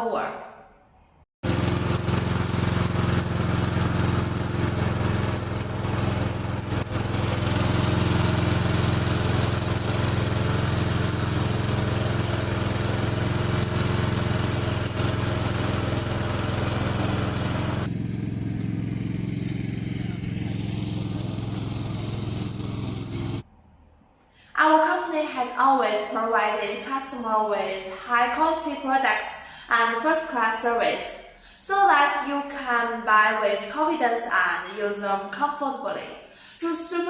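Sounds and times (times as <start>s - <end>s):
lawn mower engine drone: 1.4s - 23.4s.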